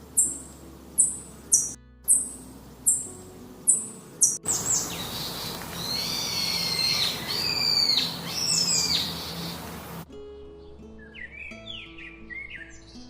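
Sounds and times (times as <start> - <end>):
high-pitched bird call: 0.0 - 10.0
whistled bird calls sliding in pitch: 0.2 - 10.0.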